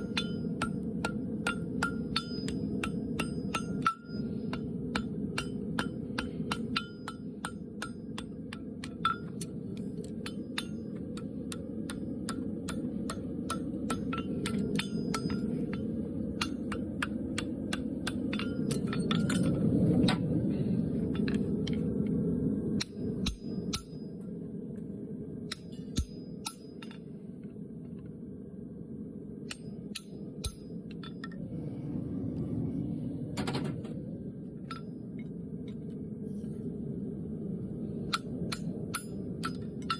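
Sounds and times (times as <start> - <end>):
hammer ringing on anvil: 0.0 - 9.4, 10.2 - 15.8
steady low roar: 31.2 - 39.8.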